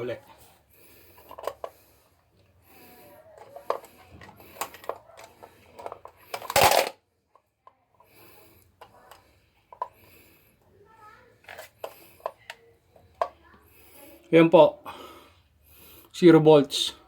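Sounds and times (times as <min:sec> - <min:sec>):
test probes clicking and scraping: 0:01.0 - 0:02.5, 0:03.4 - 0:06.9, 0:11.4 - 0:13.3.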